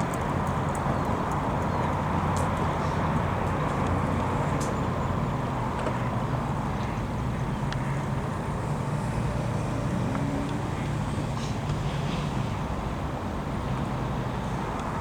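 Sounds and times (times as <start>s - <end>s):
low engine drone: 1.4s - 12.8s.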